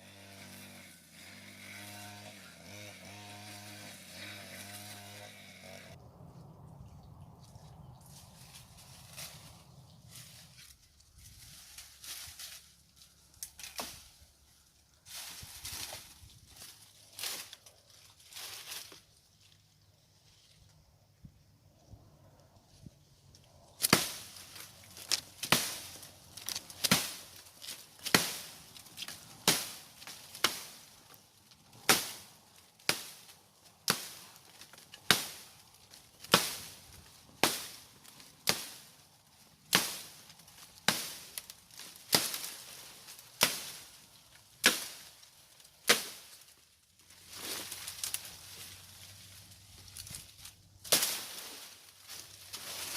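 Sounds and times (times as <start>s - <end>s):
sharp chopping strikes: 23.8s - 24.4s, 25.0s - 30.8s, 31.8s - 34.2s, 35.0s - 35.5s, 36.2s - 36.8s, 37.4s - 37.8s, 38.4s - 38.9s, 39.7s - 40.2s, 40.8s - 41.4s, 42.0s - 42.7s, 43.4s - 43.9s, 44.6s - 45.1s, 45.8s - 46.4s.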